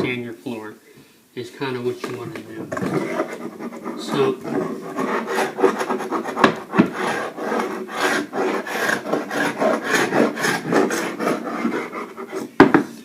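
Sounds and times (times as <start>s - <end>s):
paint scraper rasping on wood floor: 2.7s - 12.6s.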